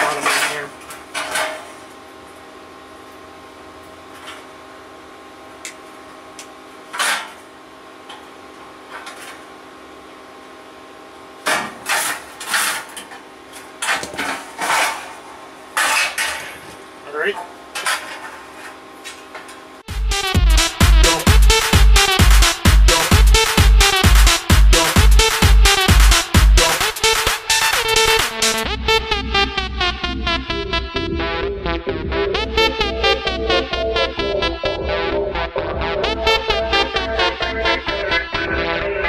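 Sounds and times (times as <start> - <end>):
steady hum: 0.0 - 39.0.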